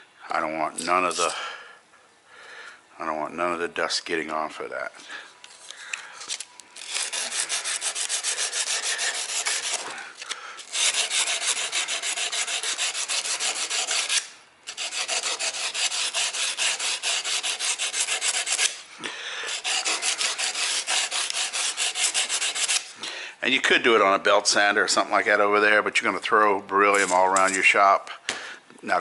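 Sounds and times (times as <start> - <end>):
sandpaper rubbing on metal: 6.8 - 10.0, 10.6 - 18.8, 19.5 - 23.0.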